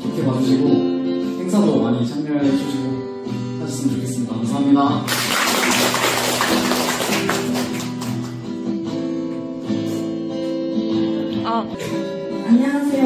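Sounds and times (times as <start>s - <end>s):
acoustic guitar strummed chords: 6.0s - 13.0s.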